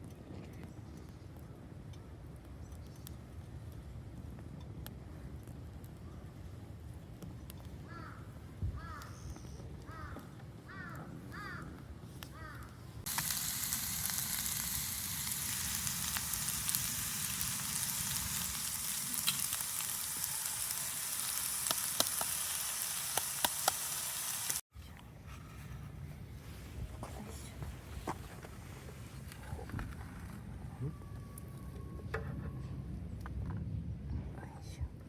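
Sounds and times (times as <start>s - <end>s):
crow cawing: 7.9s - 9.2s, 9.9s - 11.7s
food sizzling and popping: 13.0s - 24.6s.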